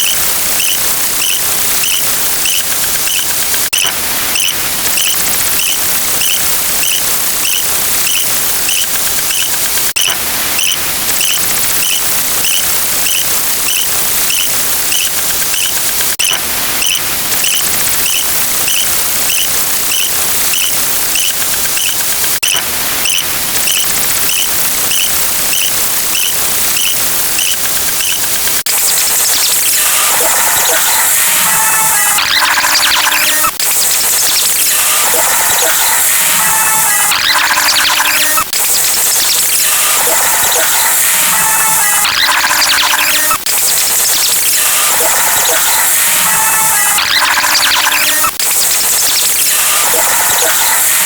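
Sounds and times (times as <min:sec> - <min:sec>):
loud steady hiss: 0:00.0 - 0:51.0
short high squeaks: 0:23.1 - 0:28.2.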